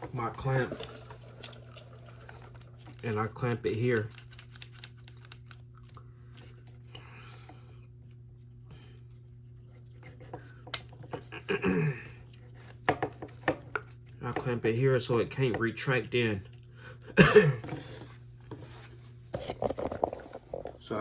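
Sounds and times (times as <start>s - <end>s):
steady low hum: 0.0s - 21.0s
person muttering: 11.4s - 12.2s.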